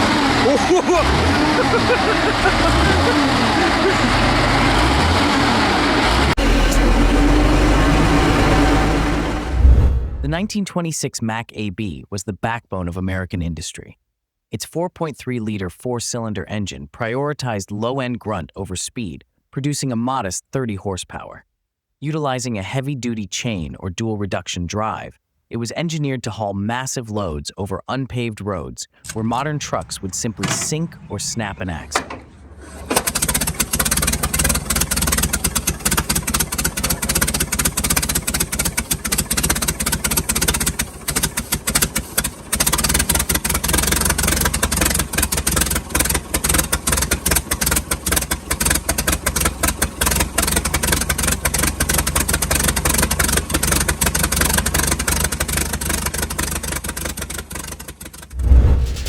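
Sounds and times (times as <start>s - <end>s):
truck engine running: 0.0s - 10.4s, 29.1s - 59.0s
loud thump: 9.3s - 10.4s, 58.3s - 59.0s.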